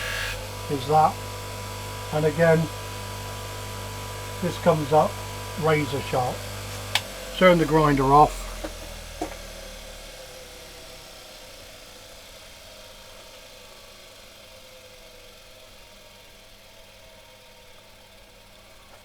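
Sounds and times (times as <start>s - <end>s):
motor low hum: 0.0s - 11.7s
buffing wheels whirring: 0.0s - 19.0s.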